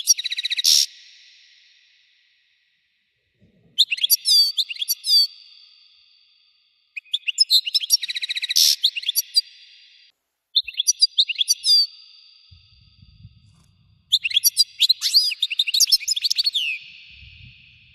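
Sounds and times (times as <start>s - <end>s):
goldfinch twittering song: 10.6s - 13.1s, 14.1s - 17.9s.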